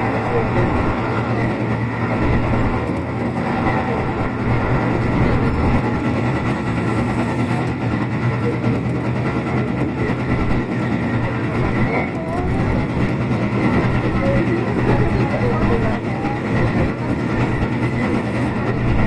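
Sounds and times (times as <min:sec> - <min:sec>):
electric train motor hum: 0:00.0 - 0:19.0
wheels rolling on rails: 0:00.0 - 0:19.0.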